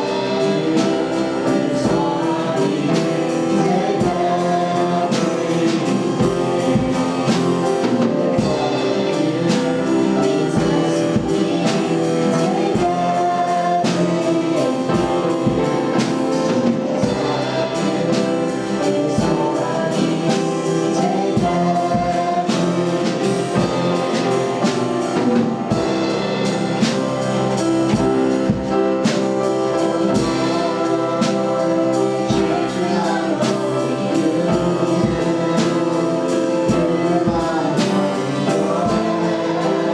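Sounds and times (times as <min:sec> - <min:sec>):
band with steady beat: 0:00.0 - 0:39.9
voices singing: 0:00.0 - 0:39.9.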